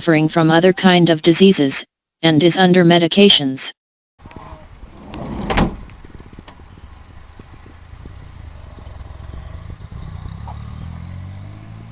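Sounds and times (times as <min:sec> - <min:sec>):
small vehicle engine running: 0:05.8 - 0:11.9.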